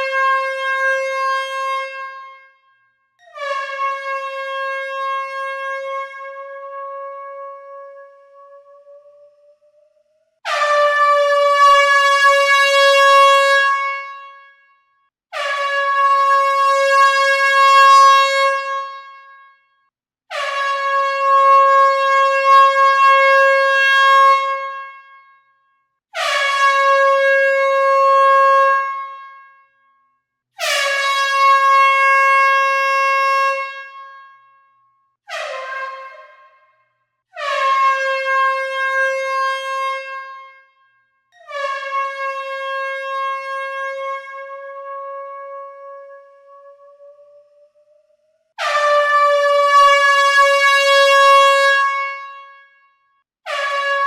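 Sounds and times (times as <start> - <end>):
air horn blasts: 0.0 - 8.8, 10.4 - 14.6, 15.3 - 19.6, 20.3 - 25.2, 26.2 - 29.5, 30.6 - 34.5, 35.3 - 36.8, 48.6 - 52.8, 53.5 - 54.0.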